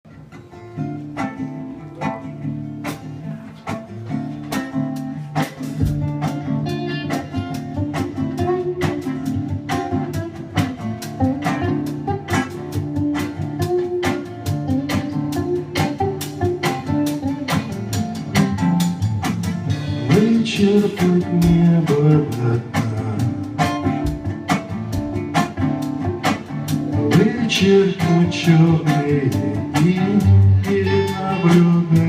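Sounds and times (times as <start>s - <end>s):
acoustic guitar playing: 0.0s - 32.0s.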